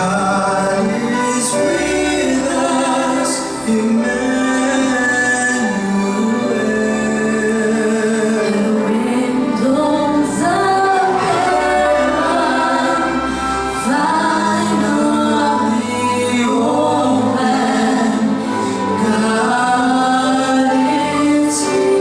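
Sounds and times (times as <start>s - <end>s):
choir singing: 0.0s - 22.0s
orchestra accompaniment: 0.0s - 22.0s.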